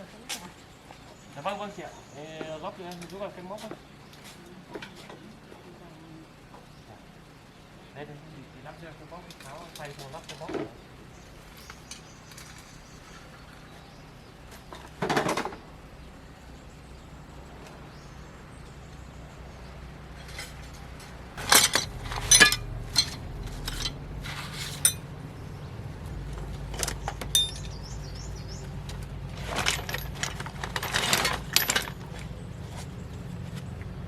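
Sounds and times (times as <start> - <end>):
low steady hum: 3.0 - 34.0
metal tools clanking: 20.1 - 25.1, 26.6 - 32.4.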